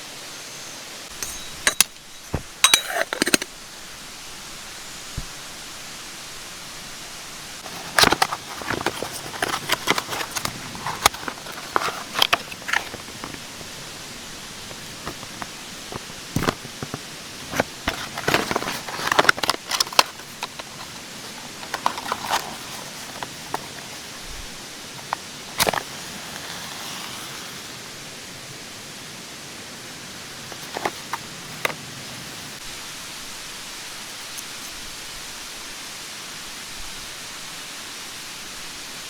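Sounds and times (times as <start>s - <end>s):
clicks knocks and rustles: 7.6s - 24.1s, 25.0s - 26.7s, 30.4s - 32.3s.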